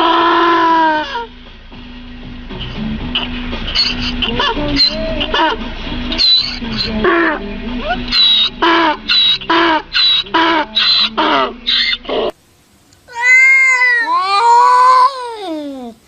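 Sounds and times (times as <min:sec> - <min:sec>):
animal calling: 0:03.1 - 0:12.4, 0:13.1 - 0:16.0.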